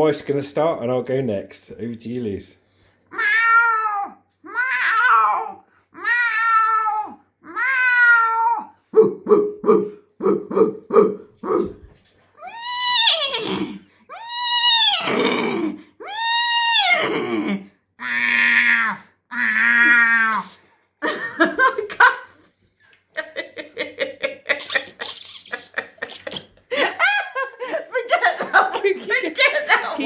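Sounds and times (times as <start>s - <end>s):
woman imitating animal calls: 12.4s - 20.6s
woman laughing: 21.0s - 22.5s, 23.1s - 30.0s.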